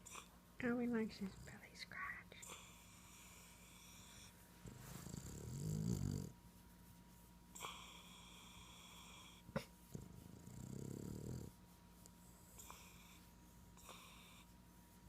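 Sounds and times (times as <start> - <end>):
dog snoring: 2.4 - 6.4, 7.5 - 11.6, 12.4 - 14.6.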